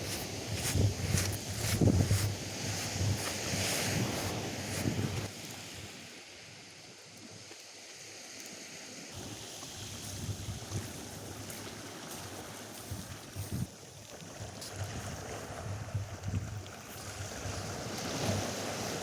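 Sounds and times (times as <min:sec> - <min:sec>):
wind buffeting microphone: 0:00.0 - 0:05.3
surf washing on beach: 0:00.0 - 0:19.0.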